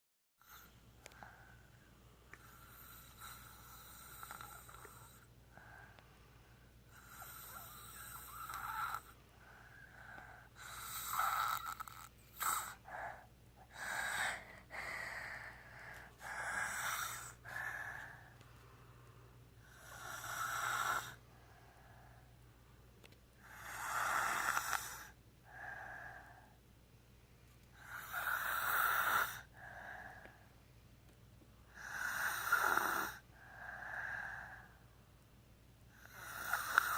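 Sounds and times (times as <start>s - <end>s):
person snoring: 2.4s - 5.8s, 6.9s - 9.2s, 9.8s - 18.3s, 19.6s - 21.2s, 23.4s - 26.4s, 27.8s - 30.2s, 31.7s - 34.7s, 35.9s - 36.9s.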